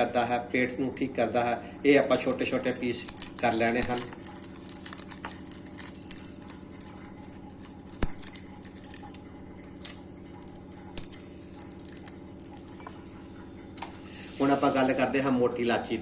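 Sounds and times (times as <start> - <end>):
steady low hum: 0.0 - 16.0
dried leaves crackling and snapping: 1.9 - 13.3.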